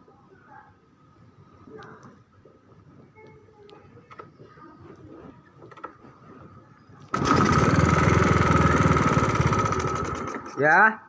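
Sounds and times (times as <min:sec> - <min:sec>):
faint clicks: 0:01.8 - 0:02.2.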